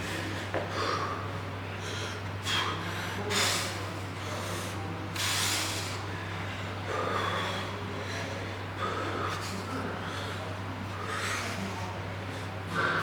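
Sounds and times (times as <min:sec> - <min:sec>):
steady low hum: 0:00.0 - 0:05.2.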